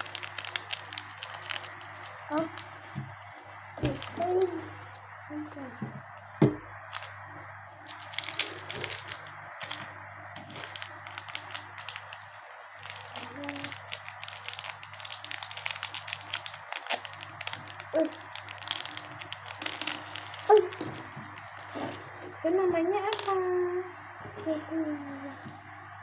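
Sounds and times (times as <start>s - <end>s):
slime being squeezed crackling: 0.0s - 4.6s, 6.9s - 7.2s, 7.8s - 22.1s.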